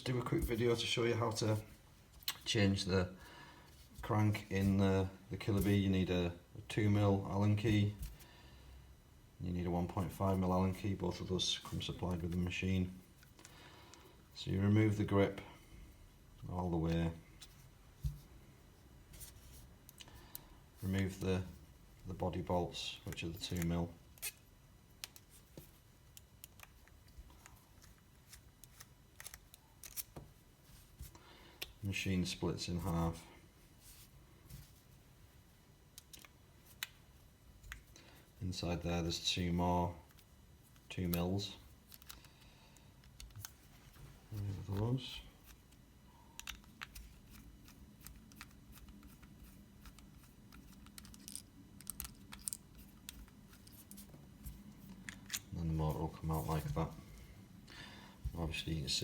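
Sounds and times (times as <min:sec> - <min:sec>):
small metal clicks and scrapes: 0:46.4 - 0:54.0.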